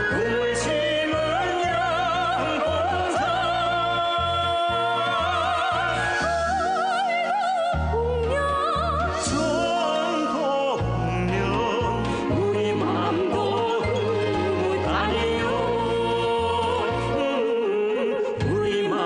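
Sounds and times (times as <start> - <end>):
band accompaniment with bass: 0.0 - 6.9, 7.8 - 17.3
person singing with vibrato: 0.0 - 19.0.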